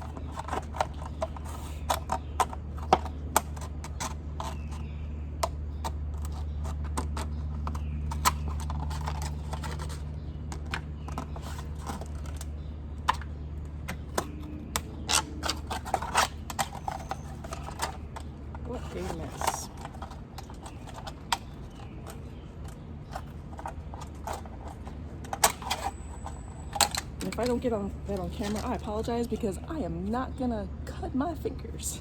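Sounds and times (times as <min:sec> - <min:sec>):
steady low hum: 0:00.0 - 0:32.0
scissors cutting plastic bottle: 0:13.9 - 0:29.5.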